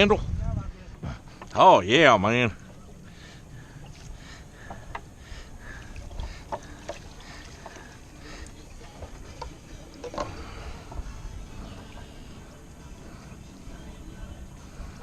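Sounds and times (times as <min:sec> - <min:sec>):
boat low rumble: 0:00.0 - 0:15.0.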